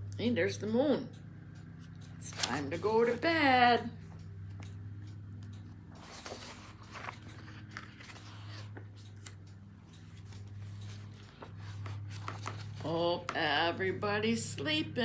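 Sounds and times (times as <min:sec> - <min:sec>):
low electrical hum: 0:00.0 - 0:15.0
faint rustles and clicks: 0:05.5 - 0:13.3.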